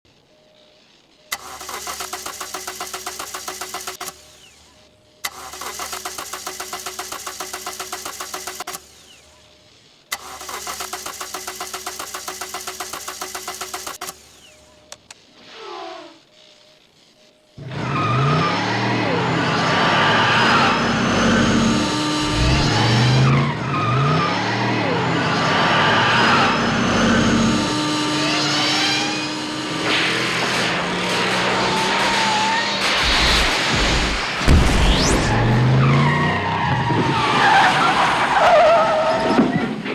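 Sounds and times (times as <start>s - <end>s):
short electrical crackles: 0.9s - 17.1s, 22.1s - 23.4s, 30.0s - 36.0s
vehicle running: 1.3s - 4.2s, 5.2s - 9.1s, 10.1s - 14.2s, 17.6s - 39.6s
starter cranking engine: 1.3s - 4.6s, 5.2s - 9.2s, 10.1s - 14.4s, 21.9s - 23.6s
starter cut-off click: 1.3s - 4.6s, 5.2s - 9.3s, 10.1s - 15.2s, 22.2s - 23.4s
rising electric whine: 18.0s - 36.9s
rush of noise: 22.2s - 23.6s, 32.8s - 36.2s.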